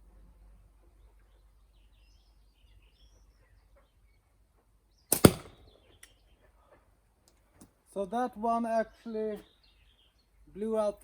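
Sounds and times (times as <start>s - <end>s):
ammo striking target: 5.1s - 5.7s.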